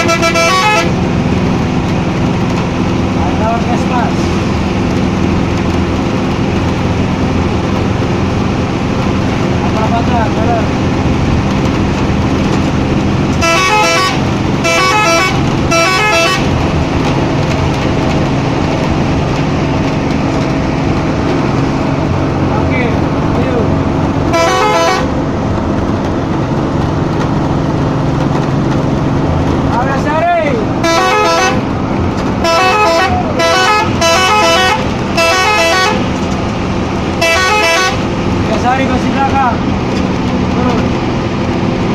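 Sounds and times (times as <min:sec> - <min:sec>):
bus horn playing a tune: 0:00.0 - 0:01.0, 0:13.4 - 0:16.6, 0:24.3 - 0:25.2, 0:30.8 - 0:31.7, 0:32.4 - 0:36.1, 0:37.2 - 0:38.1
bus engine drone: 0:00.0 - 0:41.9
steady low rumble: 0:00.0 - 0:41.9.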